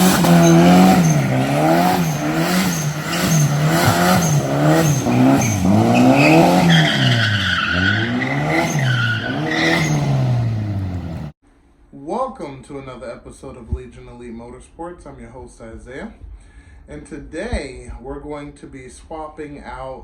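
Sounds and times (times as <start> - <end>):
tires squealing: 0.0 - 11.3
car engine revving: 0.0 - 11.4.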